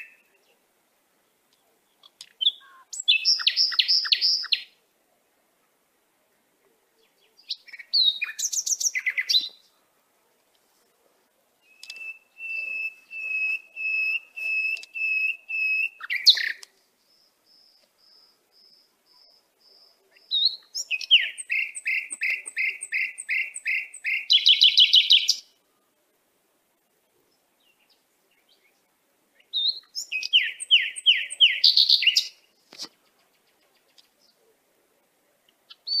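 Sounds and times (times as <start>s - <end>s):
bird singing: 0.0s - 0.6s, 1.2s - 4.8s, 7.0s - 9.7s, 11.6s - 25.6s, 27.3s - 34.4s, 35.6s - 36.0s.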